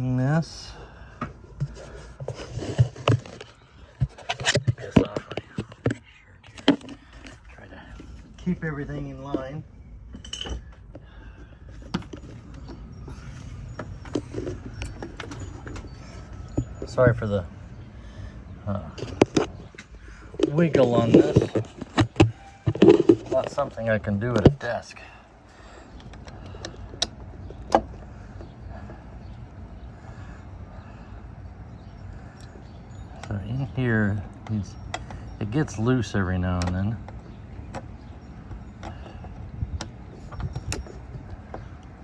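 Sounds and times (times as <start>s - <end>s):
metal ring: 10.1s - 10.8s.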